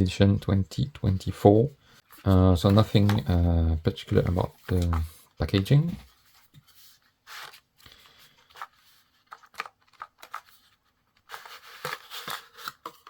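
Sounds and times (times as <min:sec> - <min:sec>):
cardboard rustling scrape: 0:05.9 - 0:07.7.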